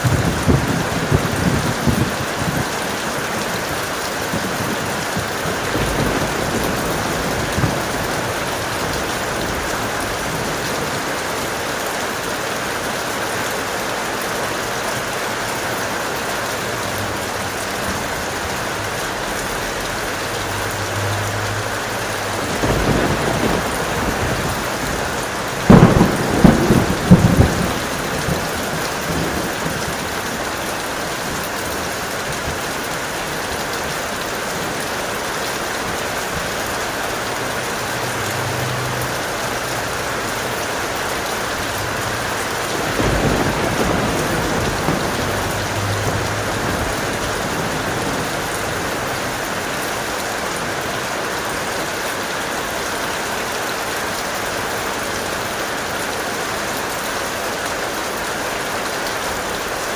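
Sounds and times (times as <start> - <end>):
loud thunder cracks: 0.0 - 2.7, 22.4 - 30.0, 42.7 - 49.0
thunder rumble: 0.0 - 11.6, 21.8 - 32.9, 41.7 - 51.1
heavy rain: 0.0 - 59.9.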